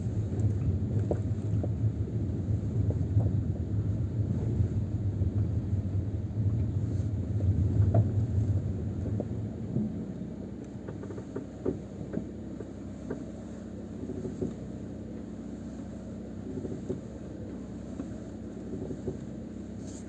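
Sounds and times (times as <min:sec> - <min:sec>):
low rumble: 0:00.0 - 0:10.6
clicks and knocks from car wheel: 0:10.7 - 0:13.3, 0:14.0 - 0:14.8, 0:16.5 - 0:20.0.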